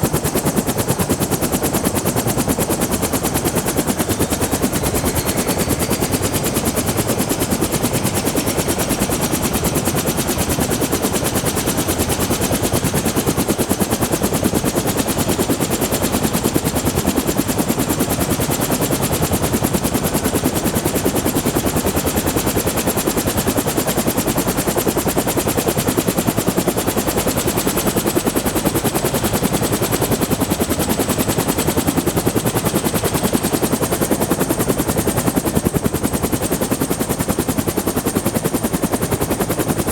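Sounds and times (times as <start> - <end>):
helicopter rotor chop: 0.0 - 39.9
turbine whine rising in pitch: 4.4 - 7.6.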